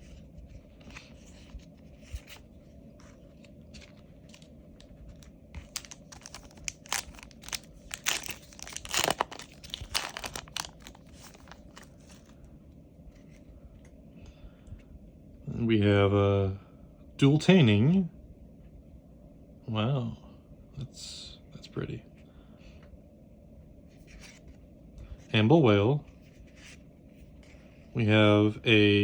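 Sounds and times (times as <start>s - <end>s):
foil wrapper crinkling and tearing: 5.1s - 12.4s.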